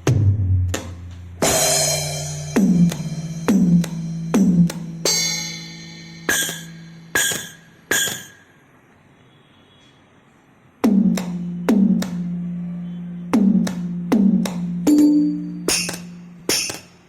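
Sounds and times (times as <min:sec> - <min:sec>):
bright electronic drum hits: 0:00.0 - 0:08.5, 0:10.8 - 0:12.3, 0:13.4 - 0:17.0
electronic tom hits: 0:00.0 - 0:08.5, 0:10.8 - 0:12.4, 0:13.3 - 0:17.0
electronic cymbal crash: 0:01.4 - 0:08.4, 0:15.6 - 0:17.0.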